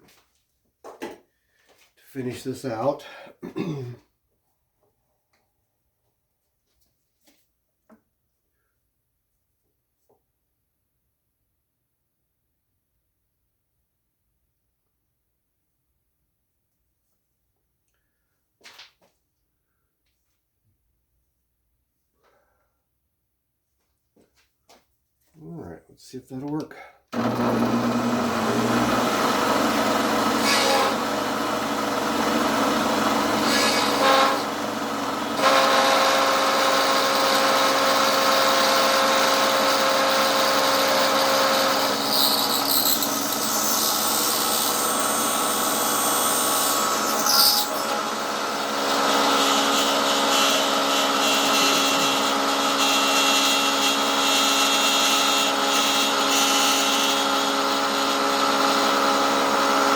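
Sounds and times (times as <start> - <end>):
cutter scraping metal: 27.2 - 59.9
machine tool motor whine: 27.2 - 59.9.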